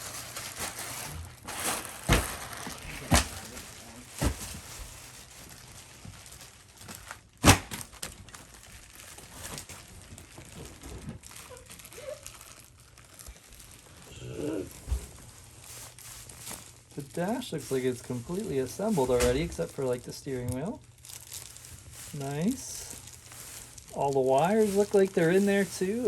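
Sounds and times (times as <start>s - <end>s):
plastic and cardboard crinkling: 0.0s - 26.0s.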